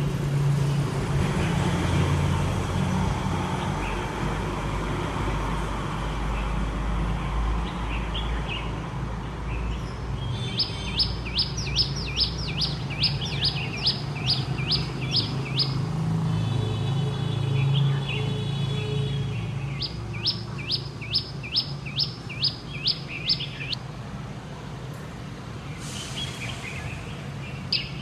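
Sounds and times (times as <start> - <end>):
city traffic rumble: 0.0 - 28.0
songbird chirping: 9.5 - 16.0, 19.3 - 23.8, 24.9 - 28.0.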